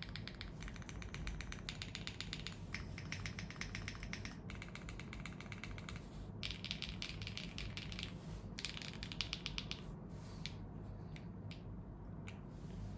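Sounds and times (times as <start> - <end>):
mechanical keyboard typing: 0.0 - 9.8.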